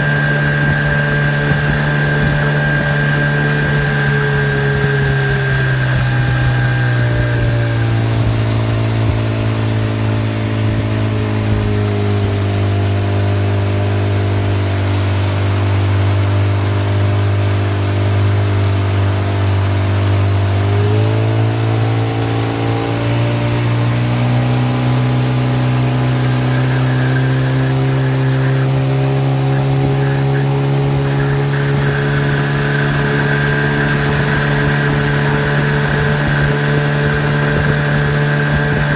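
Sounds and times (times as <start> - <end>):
engine running: 0.0 - 38.9.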